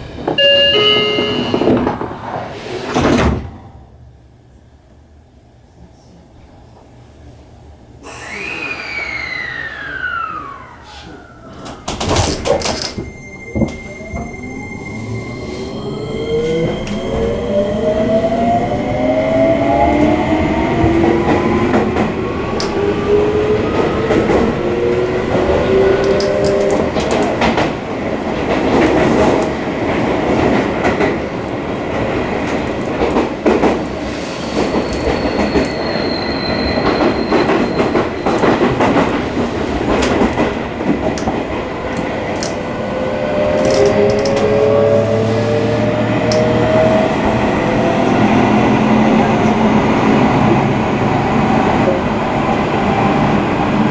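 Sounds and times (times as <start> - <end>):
electric train motor whine: 0.0 - 2.1, 8.0 - 33.0.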